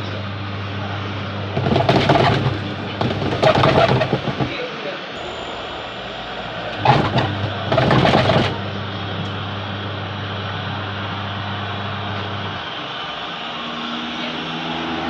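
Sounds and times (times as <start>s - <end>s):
washing machine motor humming: 1.5s - 4.6s, 6.6s - 9.2s
loud clattering: 1.6s - 4.8s, 6.8s - 8.8s.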